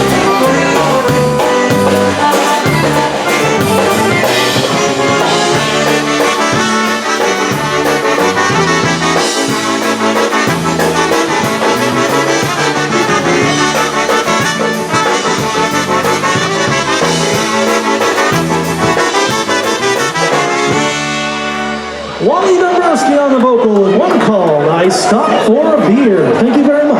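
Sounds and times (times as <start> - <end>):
trumpet and trombone: 0.0 - 23.0
polka band playing: 0.0 - 25.9.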